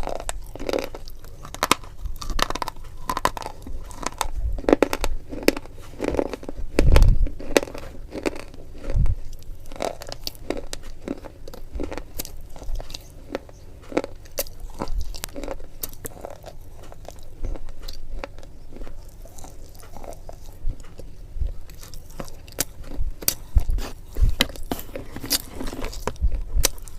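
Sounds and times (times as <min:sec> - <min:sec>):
chewing and crunching: 0:00.0 - 0:26.9.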